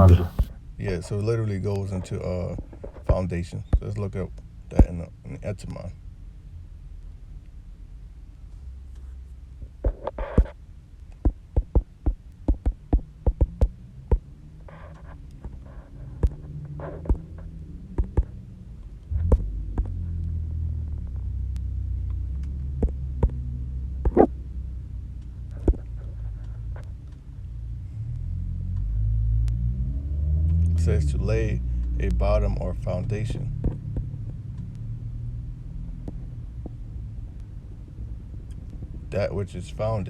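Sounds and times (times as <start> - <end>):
steady low hum: 0.0 - 29.6.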